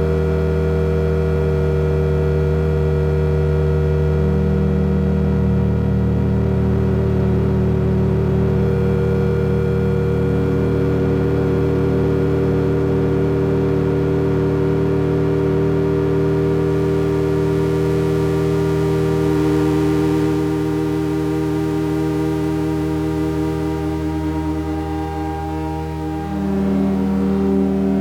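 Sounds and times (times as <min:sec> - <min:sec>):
sustained synthesizer drone: 0:00.0 - 0:28.0.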